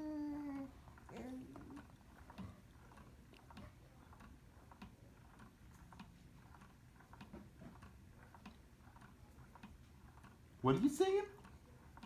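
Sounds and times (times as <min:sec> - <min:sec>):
low room hum: 0:00.0 - 0:05.4.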